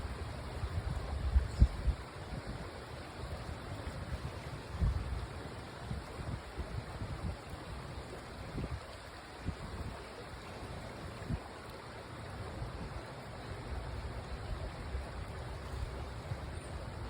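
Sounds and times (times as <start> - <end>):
stream water flowing: 0.0 - 17.0.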